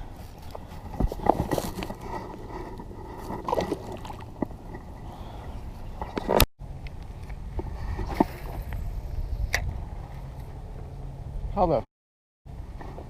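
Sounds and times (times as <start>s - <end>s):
water sloshing and gurgling: 0.4s - 6.5s.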